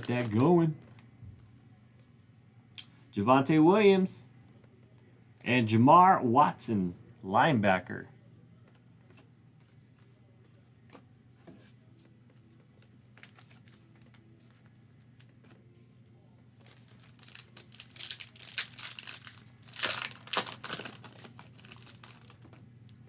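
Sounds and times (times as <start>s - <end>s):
wrapper tearing and crinkling: 0.0s - 0.5s, 16.6s - 22.6s.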